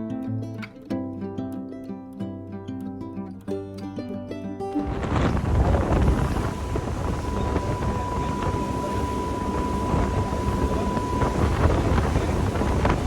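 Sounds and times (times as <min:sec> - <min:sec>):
dense rumble from boat: 0:04.8 - 0:13.0
steady high tone: 0:04.8 - 0:13.0
wind buffeting microphone: 0:04.8 - 0:13.0.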